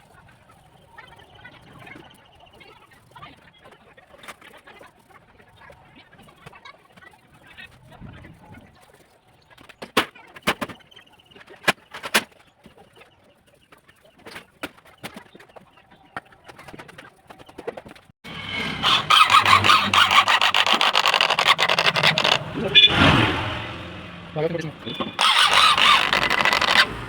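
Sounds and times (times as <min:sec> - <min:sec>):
fast rasping scrape: 0:18.3 - 0:23.8, 0:25.2 - 0:27.0.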